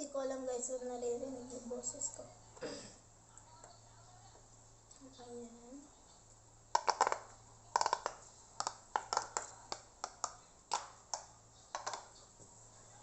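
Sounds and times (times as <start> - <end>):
paper toy crinkly clicks: 6.8 - 10.9.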